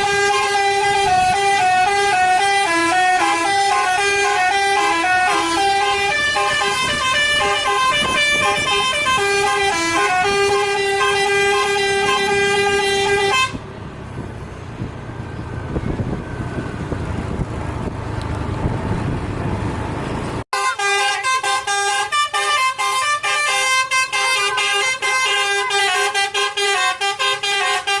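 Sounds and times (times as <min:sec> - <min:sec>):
multi-tone musical air horns: 0:00.0 - 0:13.6, 0:20.5 - 0:28.0
bus engine and road rumble: 0:00.0 - 0:28.0.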